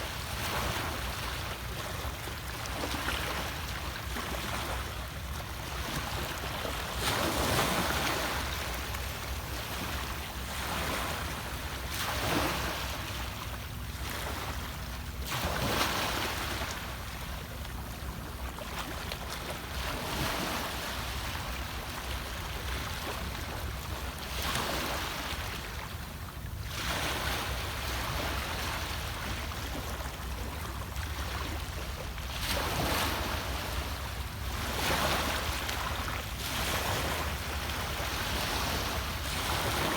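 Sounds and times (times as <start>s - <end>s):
sea waves breaking: 0.0s - 17.4s, 26.7s - 39.9s.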